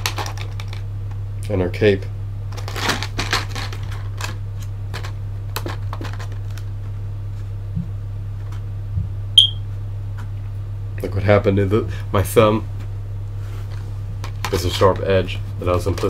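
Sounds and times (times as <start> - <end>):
plastic packaging clicks and crackles: 0.0 - 0.9, 2.5 - 6.7
electrical hum: 0.0 - 16.0
sharp high ping: 9.4 - 9.6.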